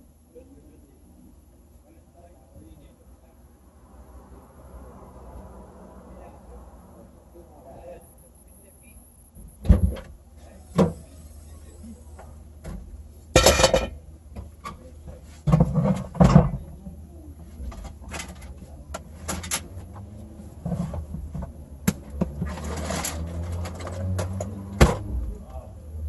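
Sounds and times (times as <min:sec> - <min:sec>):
knocks and clunks: 0:09.4 - 0:11.1, 0:12.2 - 0:16.7.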